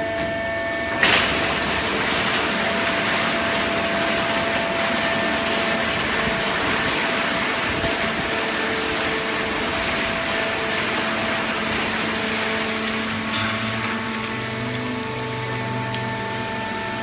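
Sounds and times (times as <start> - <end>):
machine running steadily: 0.0 - 17.0.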